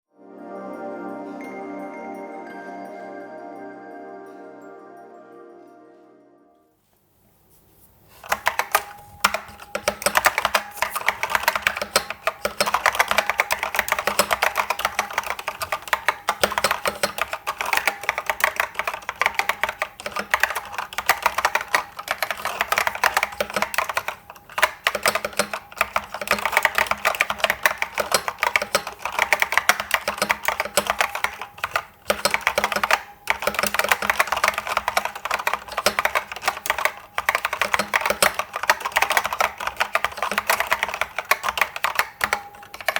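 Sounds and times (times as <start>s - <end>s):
fast keyboard typing: 8.2s - 42.9s.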